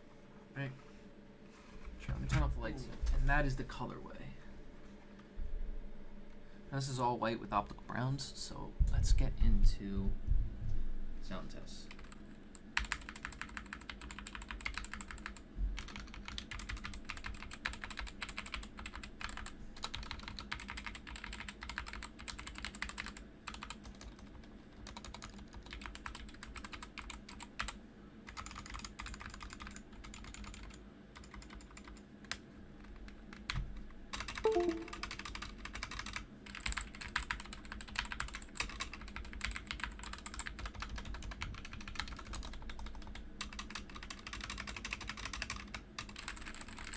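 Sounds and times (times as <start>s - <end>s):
mechanical keyboard typing: 11.9s - 46.9s.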